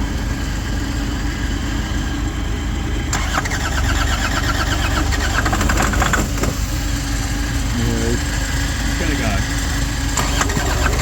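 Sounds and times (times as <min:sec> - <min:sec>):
engine turning over: 0:03.0 - 0:11.0.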